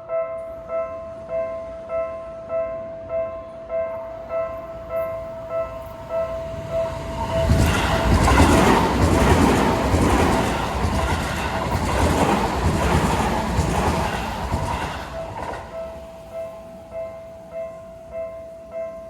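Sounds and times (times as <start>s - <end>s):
crossing warning bell ringing: 0.0s - 19.0s
train wheels clattering over joints: 7.2s - 16.0s.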